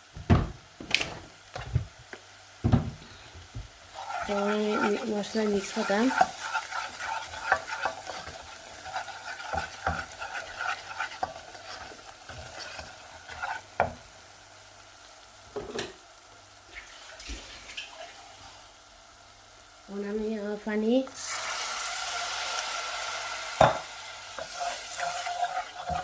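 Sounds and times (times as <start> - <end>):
oil sizzling: 0.0 - 26.0
spoon knocking on pan: 2.6 - 3.7, 23.6 - 24.6
spoon scraping a pan: 3.9 - 14.0, 23.5 - 26.0.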